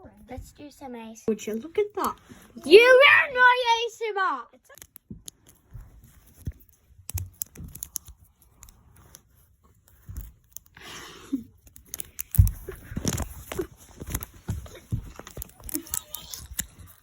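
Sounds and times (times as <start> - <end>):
plastic toys clicking and tapping: 4.6 - 10.8, 11.5 - 17.0
crinkly rustle: 11.8 - 17.0.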